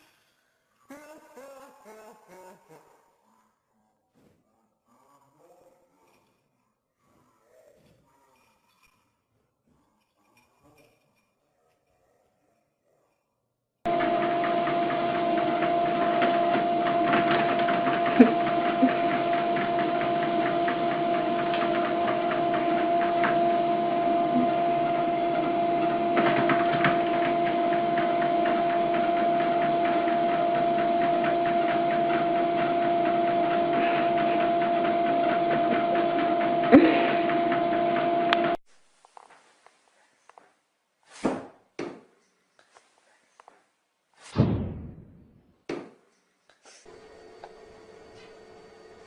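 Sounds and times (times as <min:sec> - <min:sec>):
mechanical hum with whine: 0:13.9 - 0:38.6, 0:46.9 - 0:49.0.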